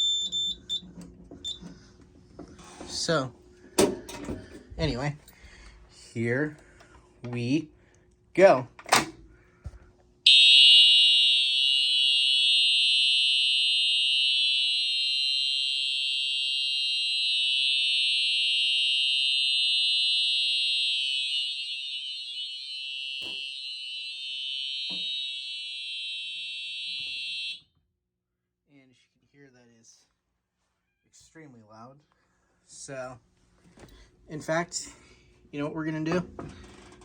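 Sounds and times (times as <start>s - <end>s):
fire alarm steady tone: 0.0s - 1.6s, 10.3s - 27.7s.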